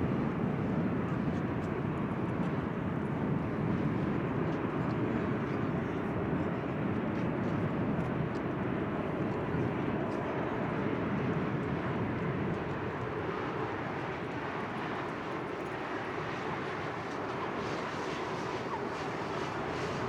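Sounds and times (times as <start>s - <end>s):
jet engines roaring at takeoff: 12.4s - 20.0s.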